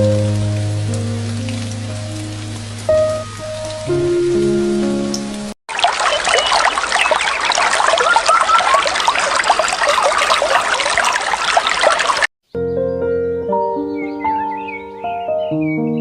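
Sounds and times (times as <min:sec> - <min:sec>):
water trickling and babbling: 0:05.4 - 0:12.3.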